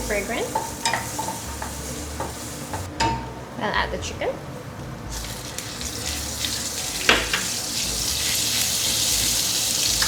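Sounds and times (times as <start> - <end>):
meat sizzling in hot oil: 5.1 - 10.0.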